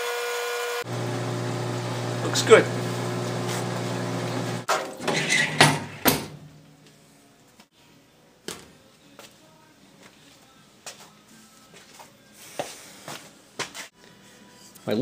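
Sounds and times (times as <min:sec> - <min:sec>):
electric pump humming: 0:00.0 - 0:04.7.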